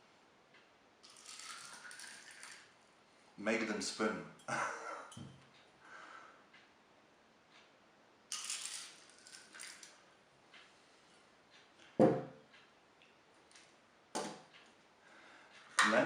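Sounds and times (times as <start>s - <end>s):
plastic pellets rattling in a container: 1.0s - 2.7s, 8.3s - 10.0s.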